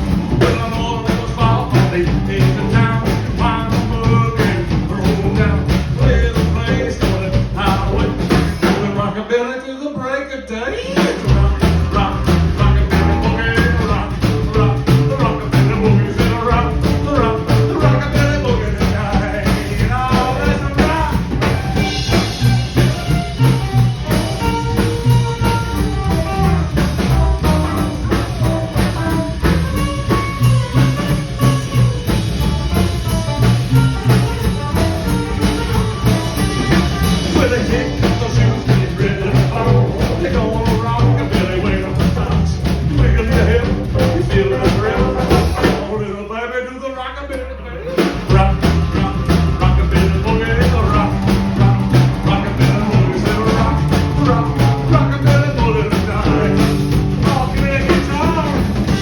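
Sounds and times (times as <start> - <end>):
driving drum beat: 0.0 - 9.3, 10.8 - 46.2, 47.9 - 59.0
rockabilly band playing: 0.0 - 9.4, 10.4 - 59.0
walking bass: 0.0 - 9.4, 10.0 - 59.0
person singing: 0.4 - 59.0
electric guitar: 10.7 - 46.0, 47.4 - 59.0.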